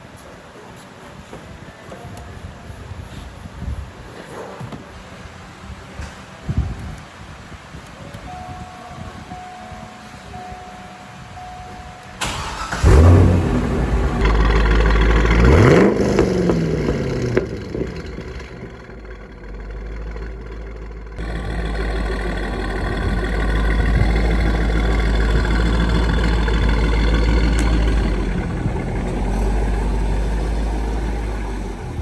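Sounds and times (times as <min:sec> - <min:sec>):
car engine idling: 0:12.0 - 0:32.0
car engine revving: 0:12.2 - 0:32.0.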